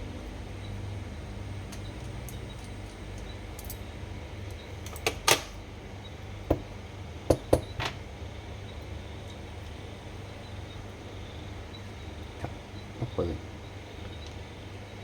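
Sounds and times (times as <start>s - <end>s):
steady low hum: 0.0s - 15.0s
metal parts knocking and clicking: 1.7s - 3.8s.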